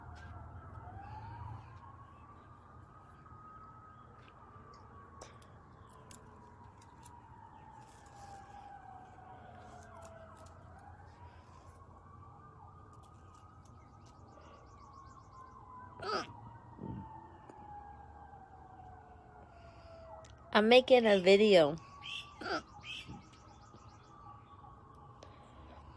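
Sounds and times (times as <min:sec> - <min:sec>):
faint siren wailing: 0:00.0 - 0:25.9
woman hiccuping: 0:16.0 - 0:16.4, 0:22.4 - 0:22.7.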